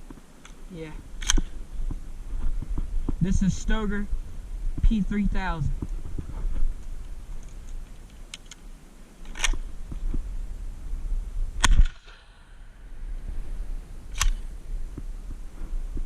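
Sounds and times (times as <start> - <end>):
shotgun bang: 11.6 - 12.5.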